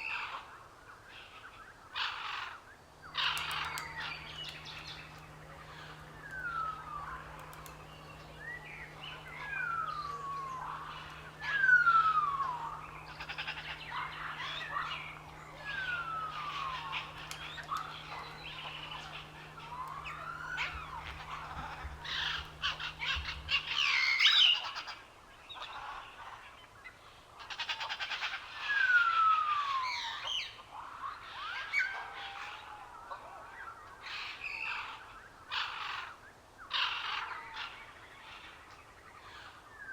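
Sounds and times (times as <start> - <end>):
low steady hum: 0.0 - 39.9
bird chirps: 2.0 - 26.4.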